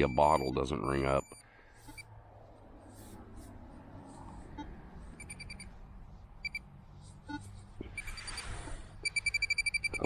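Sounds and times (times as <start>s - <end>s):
metal detector high beeps: 0.0s - 2.1s, 5.2s - 5.7s, 6.4s - 6.6s, 8.0s - 10.0s
metal detector low beep: 0.0s - 2.1s, 4.6s - 5.7s, 6.4s - 6.6s, 7.3s - 10.0s.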